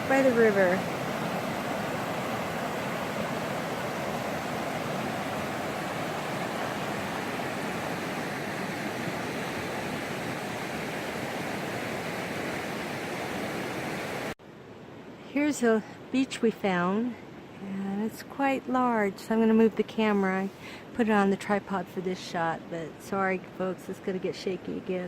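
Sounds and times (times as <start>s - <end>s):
river water rushing: 0.0s - 14.4s.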